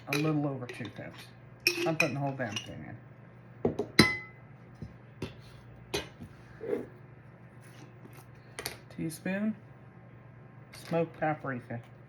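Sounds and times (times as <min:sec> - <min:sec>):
utensil clinking against jar and pan: 0:00.0 - 0:02.9.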